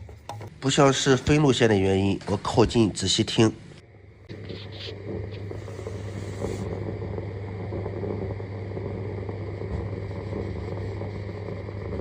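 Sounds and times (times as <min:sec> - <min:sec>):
electrical hum: 0:00.0 - 0:12.0
crackling gurgling from cable: 0:04.3 - 0:12.0.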